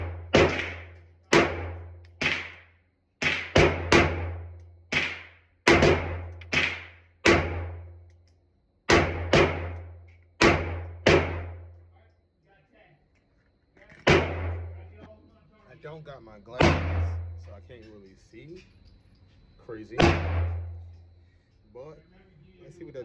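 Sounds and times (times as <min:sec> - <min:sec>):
pistol shots echoing indoors: 0:00.0 - 0:08.0, 0:08.9 - 0:11.8, 0:14.0 - 0:14.8, 0:16.6 - 0:17.3, 0:20.0 - 0:20.8.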